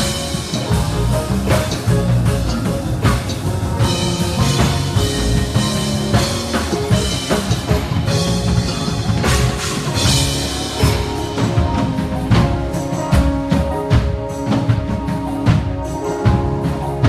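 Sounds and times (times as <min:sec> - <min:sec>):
cymbals crashing: 0:00.0 - 0:14.5
bass guitar: 0:00.0 - 0:17.0
drum kit: 0:00.0 - 0:17.0
keyboard: 0:00.0 - 0:17.0.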